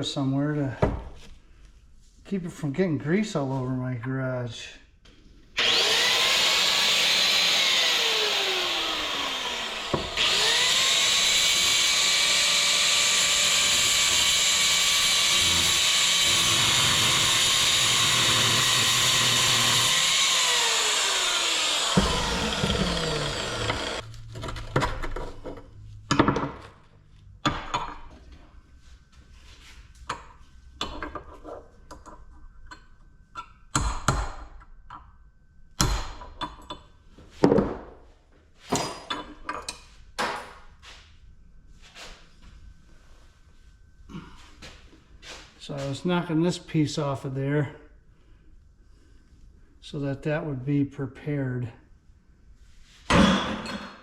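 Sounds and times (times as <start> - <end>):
power tool on steel: 5.6 - 24.1.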